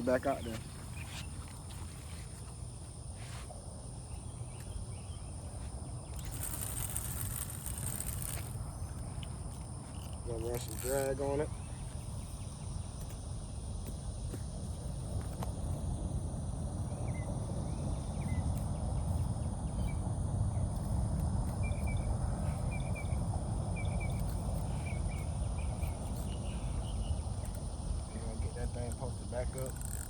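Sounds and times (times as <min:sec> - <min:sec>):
insect trill: 0:00.0 - 0:30.0.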